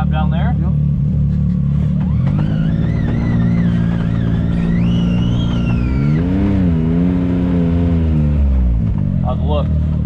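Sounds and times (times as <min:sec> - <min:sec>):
engine running and revving: 0:00.0 - 0:10.0
high wavering whine: 0:02.1 - 0:06.8.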